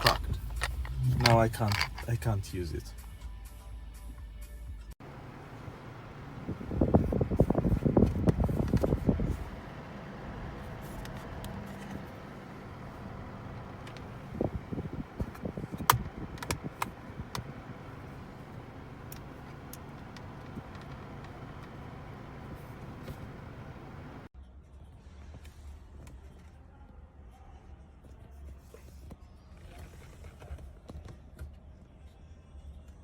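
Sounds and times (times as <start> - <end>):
sharp clicks and knocks: 0.0 - 2.2, 15.2 - 17.6
car interior hum: 0.0 - 4.2, 5.0 - 24.3.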